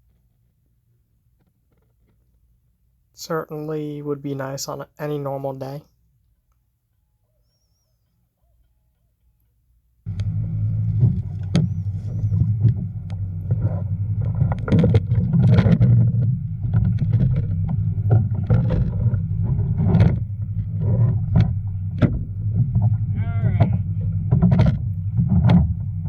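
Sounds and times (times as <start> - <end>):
boat engine running: 10.1 - 26.0
sharp knocks: 10.1 - 26.0
water splashing: 10.1 - 26.0.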